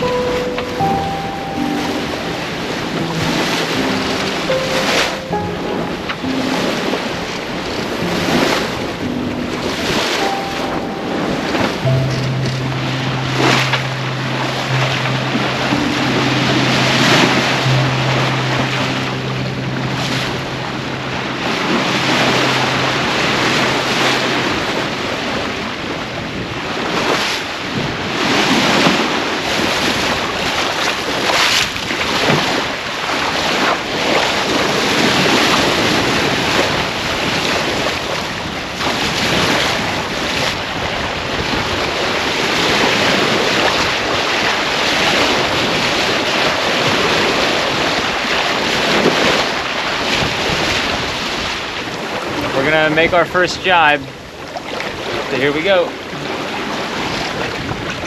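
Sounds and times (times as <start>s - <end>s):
wind and waves rushing: 0.0s - 58.0s
wind buffeting microphone: 5.8s - 58.0s.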